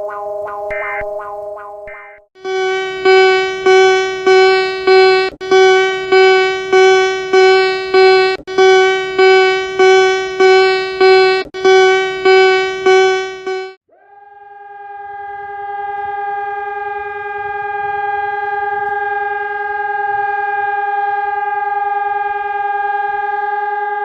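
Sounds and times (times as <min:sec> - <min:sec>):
pulsing alarm tone: 0:00.0 - 0:13.8.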